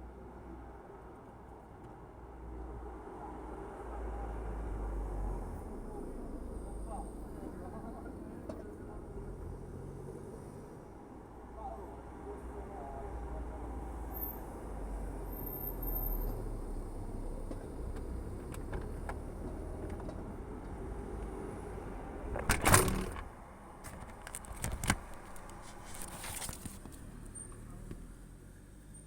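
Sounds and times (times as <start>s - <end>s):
distant traffic: 0.0s - 29.0s
loud clattering rustle: 22.3s - 27.0s.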